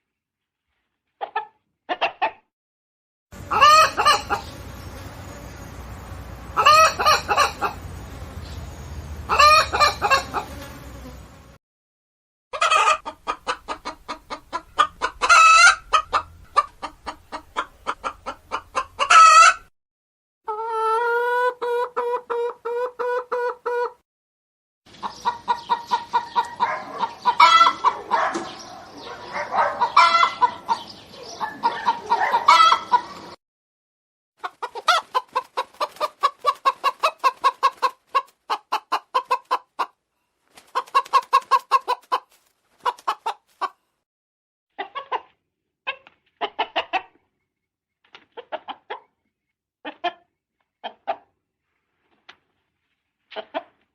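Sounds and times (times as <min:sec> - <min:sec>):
hens clucking: 0:01.2 - 0:02.4, 0:03.4 - 0:04.6, 0:06.5 - 0:07.9, 0:09.3 - 0:10.5, 0:12.6 - 0:19.6, 0:20.5 - 0:24.0, 0:24.9 - 0:33.4, 0:34.4 - 0:43.8, 0:44.8 - 0:47.3, 0:48.3 - 0:49.1, 0:49.8 - 0:51.3, 0:53.3 - 0:53.8
fast pulsing hen call: 0:03.4 - 0:04.5.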